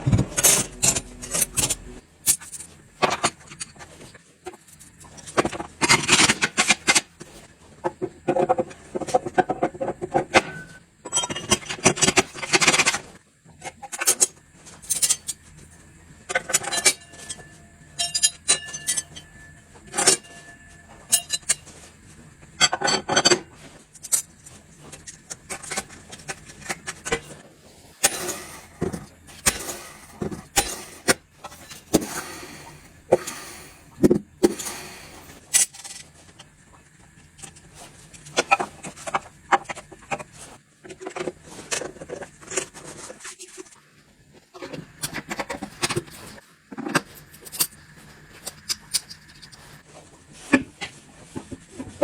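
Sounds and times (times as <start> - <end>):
metal tools clinking and scraping: 0.0 - 2.7, 16.3 - 21.9, 25.0 - 36.0.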